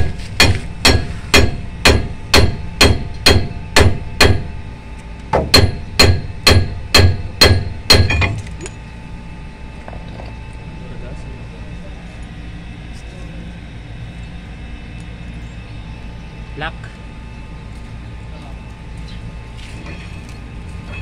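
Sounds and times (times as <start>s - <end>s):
hammer striking metal: 0.0s - 4.5s, 5.3s - 8.8s.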